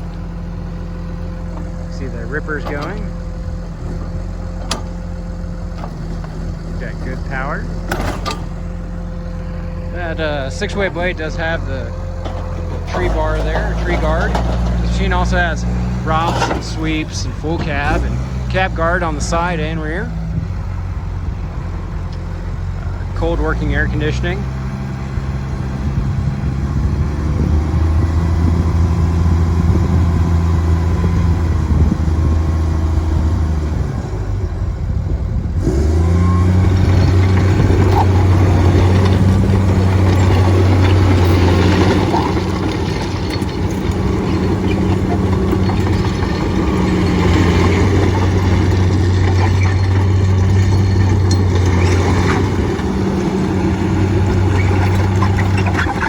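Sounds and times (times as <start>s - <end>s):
bulldozer diesel engine running: 0.0s - 56.0s
machine knocks and rattles: 1.1s - 18.7s, 36.5s - 56.0s.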